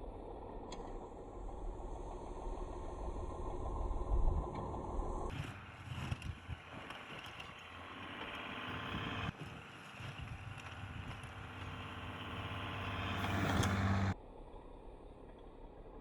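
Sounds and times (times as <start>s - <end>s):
low engine hum: 0.0s - 16.0s
plow rushing noise: 2.0s - 14.2s.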